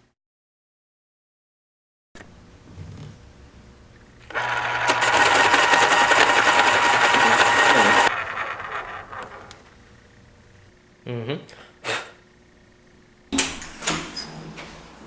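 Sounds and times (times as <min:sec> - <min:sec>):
electric pencil sharpener whirring: 0:04.3 - 0:09.8.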